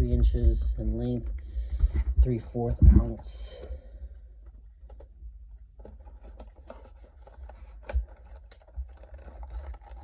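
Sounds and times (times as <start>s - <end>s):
handling clicks and rubbing: 5.8s - 10.0s.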